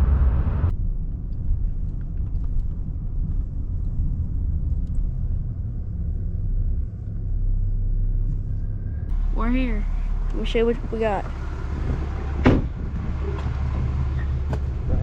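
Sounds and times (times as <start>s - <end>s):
truck rumble from inside cab: 0.0s - 15.0s
road hiss: 9.1s - 15.0s.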